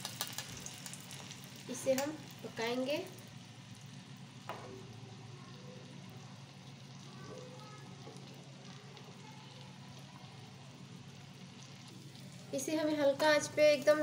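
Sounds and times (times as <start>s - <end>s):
spices sizzling in a pan: 0.0s - 14.0s.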